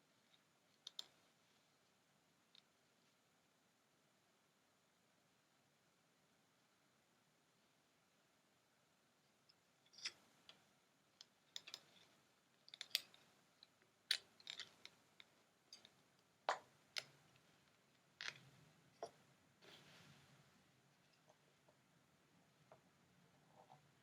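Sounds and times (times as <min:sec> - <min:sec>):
faint clicks and taps: 0:00.3 - 0:01.2
soft rustle: 0:17.1 - 0:21.8.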